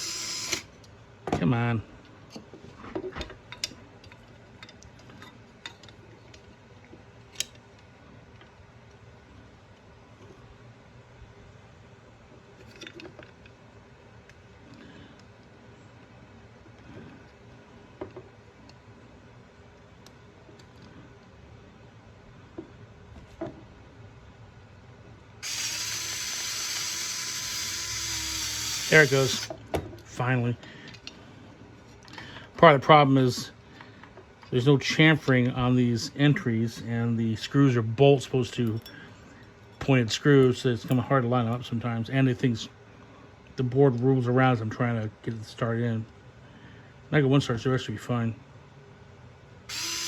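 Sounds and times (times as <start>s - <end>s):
electric screwdriver running: 0.0s - 0.7s, 25.4s - 29.5s, 49.7s - 50.0s.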